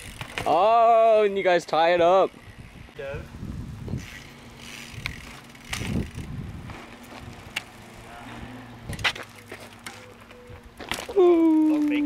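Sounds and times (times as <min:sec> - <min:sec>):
bike clicks and knocks: 0:00.0 - 0:00.8, 0:04.0 - 0:08.0, 0:08.8 - 0:12.0
bike tyres rolling on pavement: 0:00.0 - 0:12.0.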